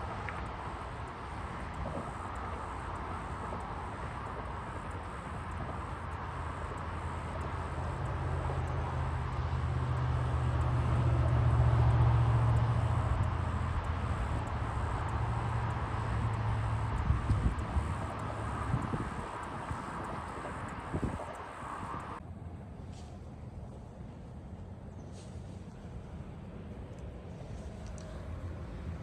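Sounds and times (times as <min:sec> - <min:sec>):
distant vehicle engine passing: 0:00.0 - 0:22.2.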